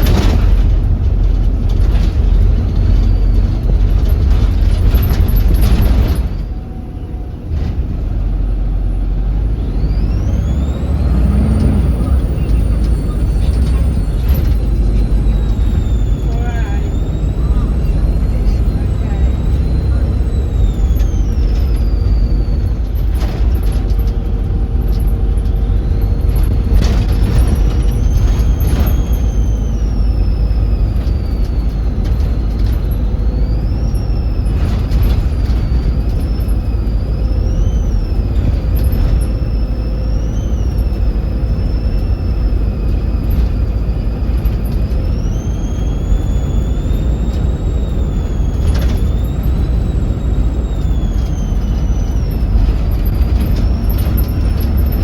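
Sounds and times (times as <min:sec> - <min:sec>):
sharp knocks and rattles: 0:00.0 - 0:06.8, 0:17.1 - 0:40.1, 0:42.9 - 0:55.0
turbocharger whistling: 0:00.0 - 0:07.5, 0:08.3 - 0:55.0
bus diesel engine rumbling: 0:00.0 - 0:55.0.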